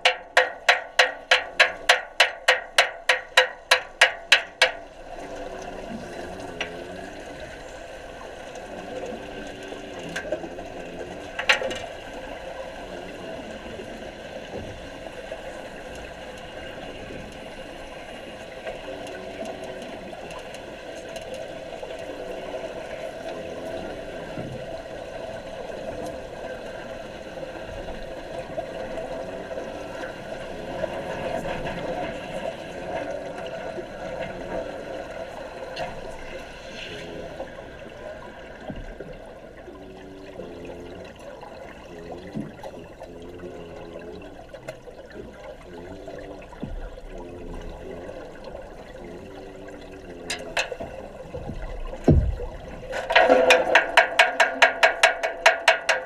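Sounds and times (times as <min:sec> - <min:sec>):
rapid sharp taps: 0:00.0 - 0:04.9, 0:53.1 - 0:56.0
muffled bubbling water: 0:00.0 - 0:56.0
sharp knock: 0:52.0 - 0:56.0.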